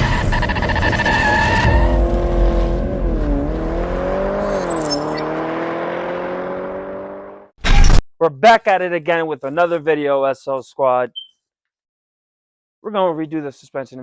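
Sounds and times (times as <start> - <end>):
car engine at speed: 0.0 - 7.5.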